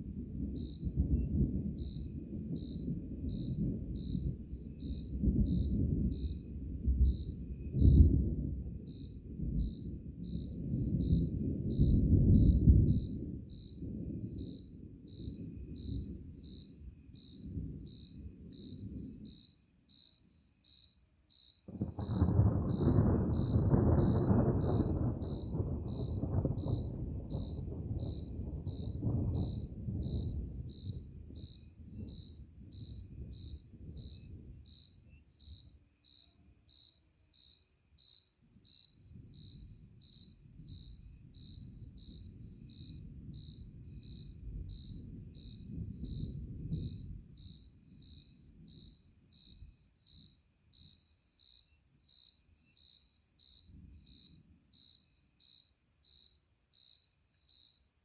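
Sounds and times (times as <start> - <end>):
cricket chirping: 0.0 - 58.0
distant thunder rolling: 0.1 - 19.4, 21.7 - 35.8, 38.7 - 51.0.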